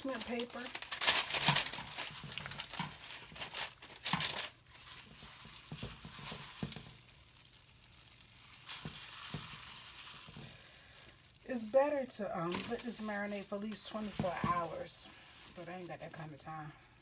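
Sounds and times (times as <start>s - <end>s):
parchment paper crinkling: 0.0s - 17.0s.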